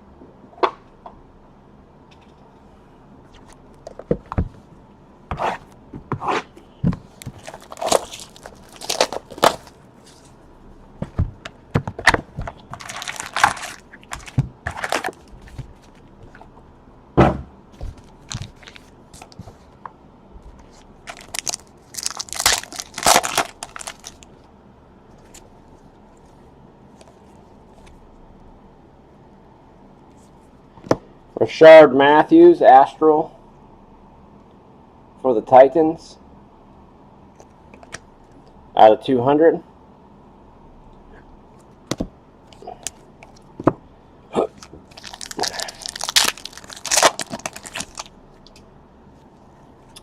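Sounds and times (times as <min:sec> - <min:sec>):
cards being handled: 0:07.0 - 0:10.4, 0:12.1 - 0:16.5, 0:20.6 - 0:24.3
wrappers crinkling and tearing: 0:07.3 - 0:10.3, 0:12.7 - 0:16.0, 0:21.0 - 0:24.3, 0:44.5 - 0:48.6.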